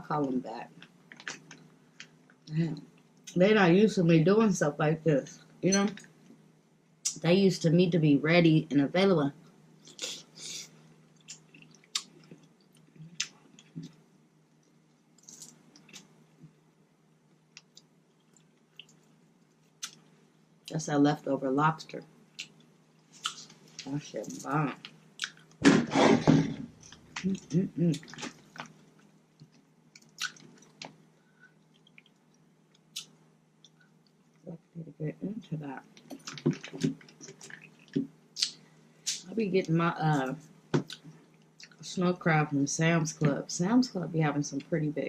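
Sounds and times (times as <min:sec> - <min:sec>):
person chewing: 0:24.8 - 0:25.6, 0:26.7 - 0:30.9, 0:31.6 - 0:34.0
chewing with wet smacks: 0:27.9 - 0:31.0.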